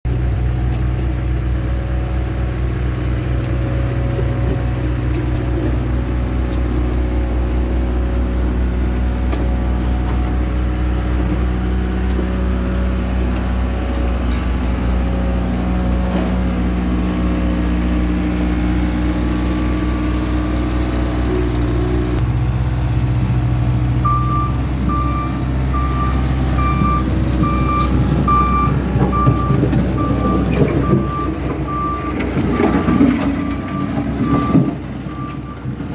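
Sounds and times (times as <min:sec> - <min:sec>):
loader diesel engines running: 0:00.0 - 0:35.9
backup alarm beeping: 0:24.0 - 0:35.6.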